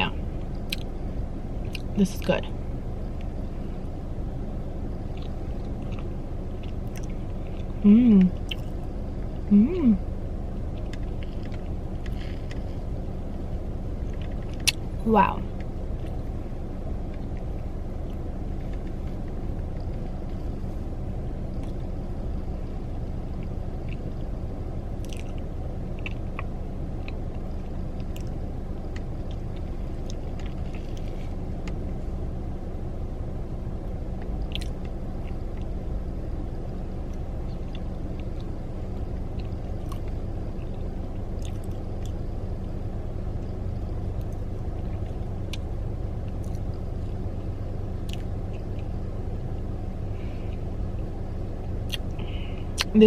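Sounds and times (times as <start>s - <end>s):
low rumble: 0.0s - 53.0s
person chewing: 5.1s - 8.8s, 25.0s - 28.4s, 41.4s - 42.2s, 51.8s - 52.9s.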